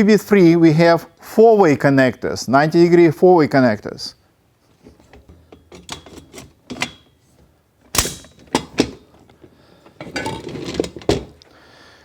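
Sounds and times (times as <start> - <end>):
frame poles clicking into connectors: 7.9 - 9.0.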